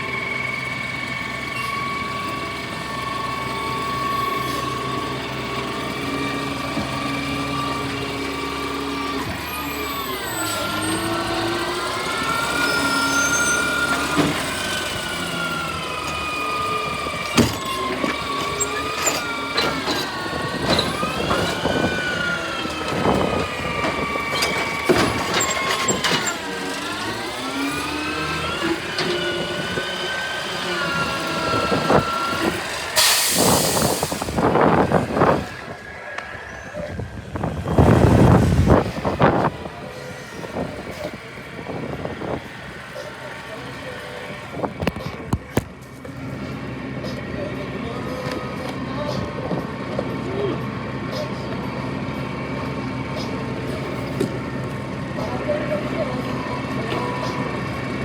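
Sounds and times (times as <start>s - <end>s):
garbage truck engine revving: 0.0s - 58.0s
clunks and knocks: 17.0s - 27.2s
air hiss burst: 33.0s - 34.4s.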